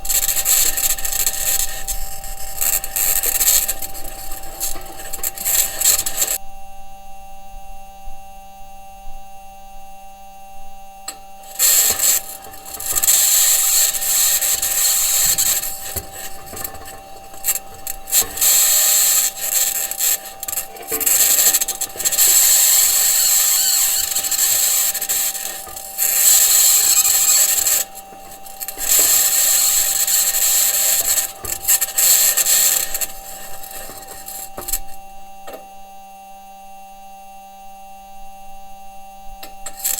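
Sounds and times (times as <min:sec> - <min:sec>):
high-pitched scratching noise: 0:00.0 - 0:06.4, 0:11.4 - 0:35.0
steady electrical hum: 0:00.0 - 0:39.9.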